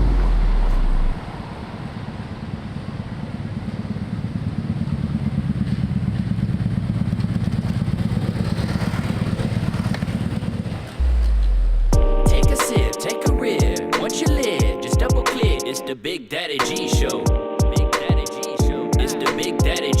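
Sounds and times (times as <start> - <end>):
deep boom: 0.0 - 1.4, 11.0 - 12.9
engine pulsing rumble: 0.0 - 12.6.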